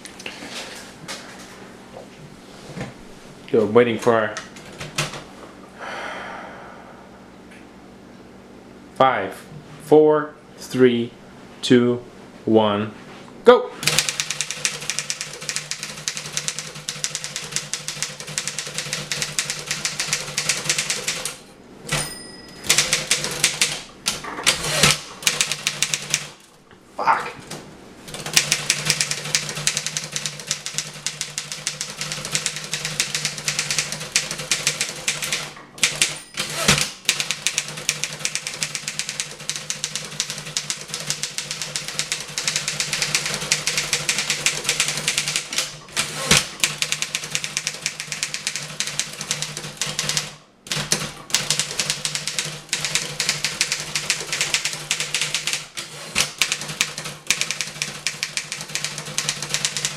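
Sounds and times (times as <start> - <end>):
steady low hum: 0.0 - 55.4
typewriter keystrokes clattering: 13.8 - 22.0, 22.6 - 26.4, 28.1 - 59.9.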